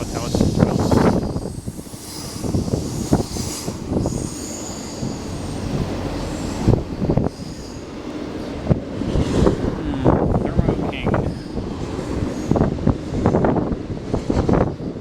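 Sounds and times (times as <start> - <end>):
freight train rumbling past: 0.0 - 15.0
high wheel squeals: 0.2 - 8.7.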